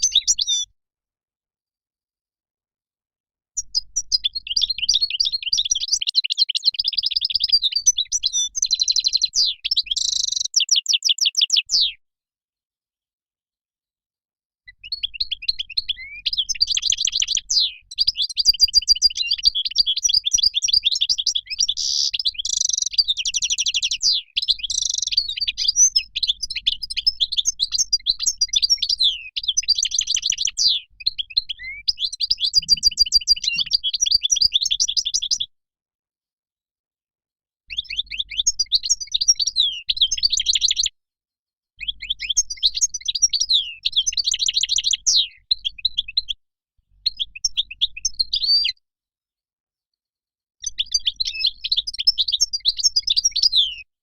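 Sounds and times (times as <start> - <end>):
finch twittering song: 0.0 - 0.7, 3.6 - 12.0, 14.7 - 35.5, 37.7 - 40.9, 41.8 - 46.4, 50.6 - 53.9.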